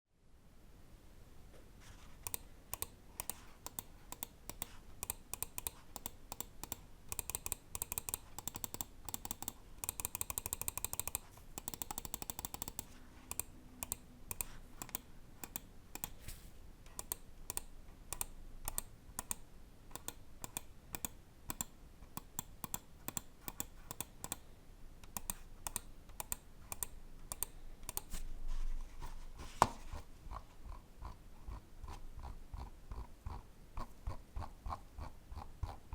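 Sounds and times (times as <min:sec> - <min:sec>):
mouse buttons clicking: 0:02.2 - 0:24.4, 0:25.0 - 0:28.2.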